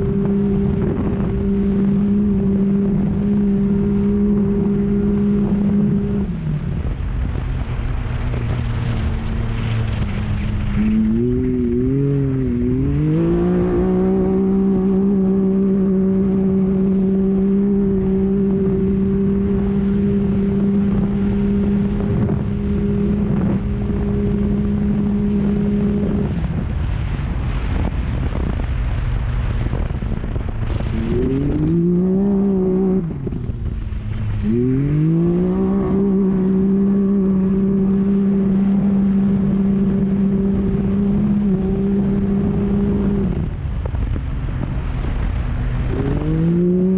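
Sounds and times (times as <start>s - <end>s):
race vehicle engine revving: 0.0s - 46.9s
wind and road noise: 0.0s - 46.9s.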